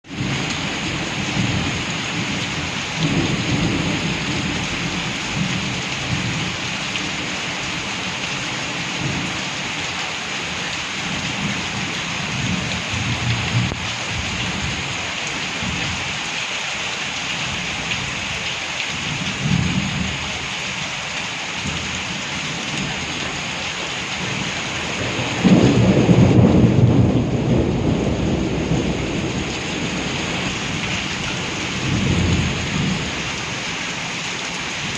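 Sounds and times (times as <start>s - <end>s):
heavy rain falling: 0.0s - 34.9s
rolling thunder: 24.2s - 33.7s.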